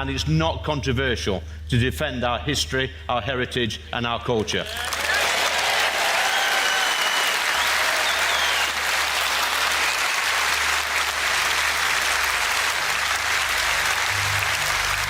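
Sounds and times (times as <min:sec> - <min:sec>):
audience applauding: 0:04.6 - 0:15.0.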